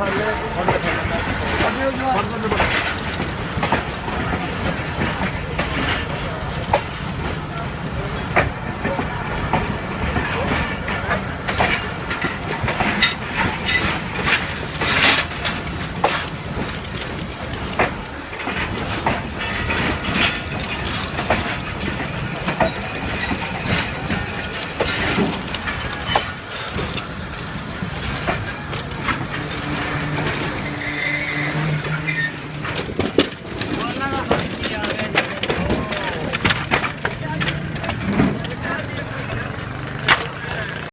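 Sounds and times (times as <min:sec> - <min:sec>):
train rumble: 0:00.0 - 0:40.9
train wheels clacking over rail joints: 0:00.0 - 0:40.9
high squeal: 0:29.5 - 0:32.9.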